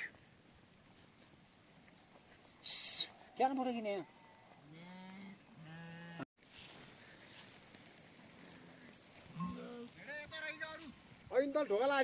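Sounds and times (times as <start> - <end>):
sheep bleating: 8.4 - 10.0.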